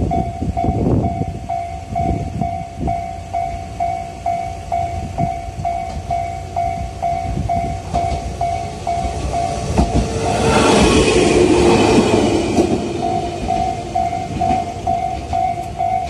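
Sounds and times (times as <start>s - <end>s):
level crossing warning bell: 0.0s - 10.1s, 12.2s - 16.0s
electric train rumbling: 0.0s - 16.0s
wheels clacking over rail joints: 7.8s - 16.0s.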